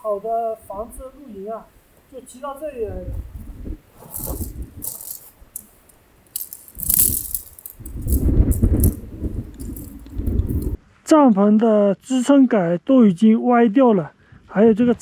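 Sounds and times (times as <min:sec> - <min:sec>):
low rumbles on microphone: 0:02.9 - 0:04.8, 0:06.8 - 0:10.8
tent poles rattling and clattering: 0:03.2 - 0:10.8.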